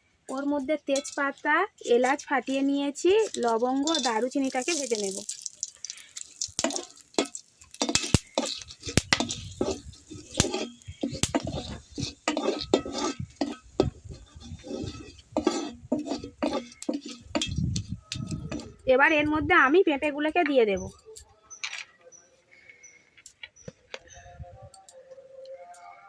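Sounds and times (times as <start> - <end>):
spatula scraping spices in pan: 0.3 - 19.3.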